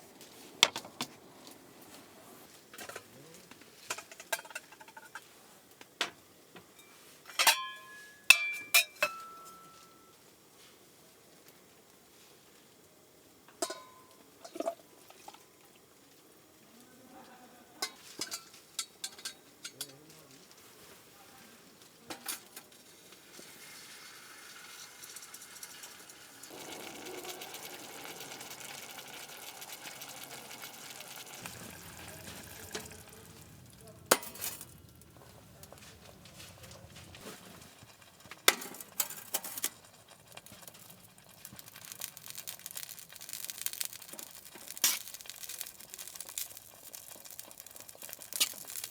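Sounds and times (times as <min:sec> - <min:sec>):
food sizzling in a pan: 0:00.0 - 0:48.9
cookware clinking: 0:06.8 - 0:10.1, 0:13.6 - 0:14.8, 0:17.8 - 0:20.0, 0:25.2 - 0:37.2.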